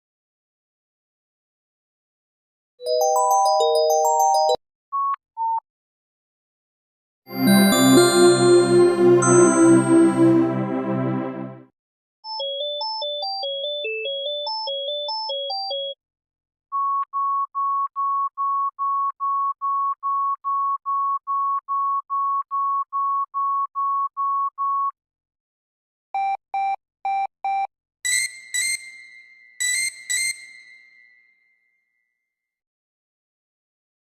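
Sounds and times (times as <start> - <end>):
bright ringing chimes: 7.3 - 11.4
short electronic tune: 7.3 - 11.6.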